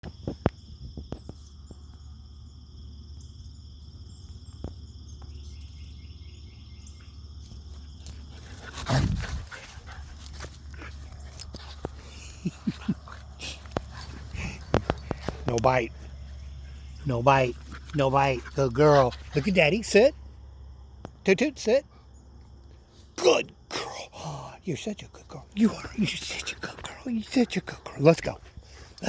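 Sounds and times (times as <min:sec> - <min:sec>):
puppy play sounds: 0:07.0 - 0:20.3, 0:25.4 - 0:29.0.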